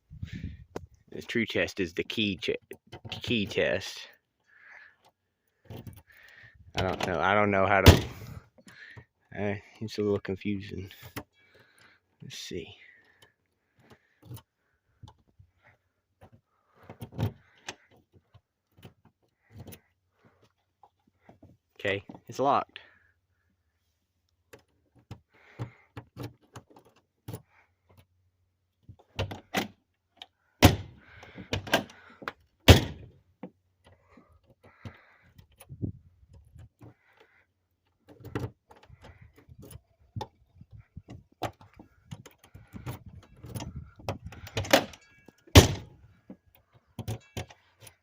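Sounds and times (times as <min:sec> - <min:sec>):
door thunks: 0:07.8 - 0:08.3, 0:32.7 - 0:33.1
lock and handle clicks and rattles: 0:29.0 - 0:33.1, 0:38.0 - 0:48.0.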